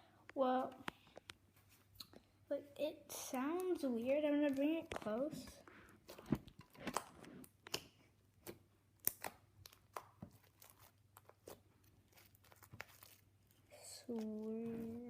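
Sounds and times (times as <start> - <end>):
slime sticky pops and crackles: 6.1 - 13.2
slime snaps: 7.7 - 10.1.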